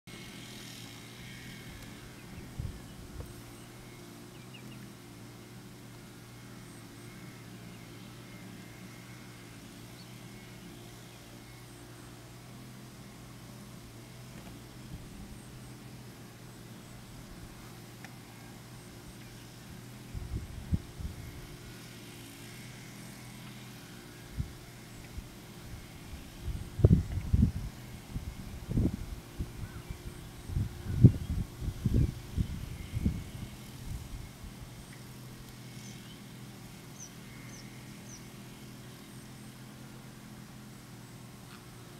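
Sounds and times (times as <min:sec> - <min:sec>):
faint low drone: 0:00.1 - 0:41.9
steady low hum: 0:00.1 - 0:41.9
small bird chirping: 0:02.0 - 0:04.9, 0:35.7 - 0:39.5
wind buffeting microphone: 0:02.2 - 0:03.4, 0:20.1 - 0:21.6, 0:24.3 - 0:34.8.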